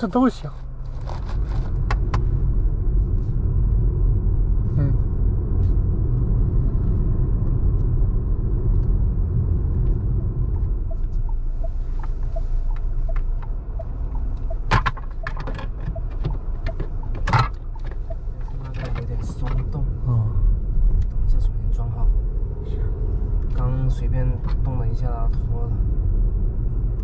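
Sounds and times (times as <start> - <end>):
car engine rumble inside vehicle: 0.0 - 27.0
light regular ticking: 9.8 - 19.8
sharp clicks and knocks: 12.7 - 19.7.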